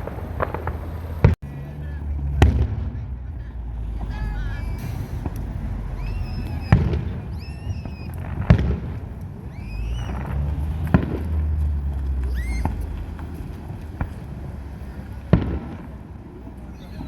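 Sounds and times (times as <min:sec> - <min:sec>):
firework shells bursting: 0:00.0 - 0:01.4, 0:04.0 - 0:17.0
low rumble: 0:00.0 - 0:16.6
high whistling tones: 0:04.2 - 0:08.2, 0:09.4 - 0:10.4, 0:12.3 - 0:12.8.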